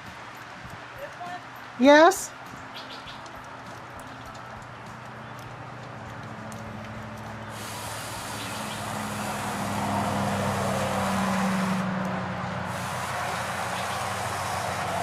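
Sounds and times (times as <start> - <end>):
electric pole saw cutting wood: 7.5 - 15.0.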